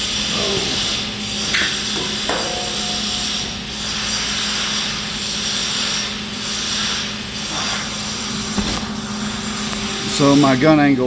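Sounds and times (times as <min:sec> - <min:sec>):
welding arc crackling sizzle: 0:00.0 - 0:11.0
low hum: 0:01.7 - 0:04.6.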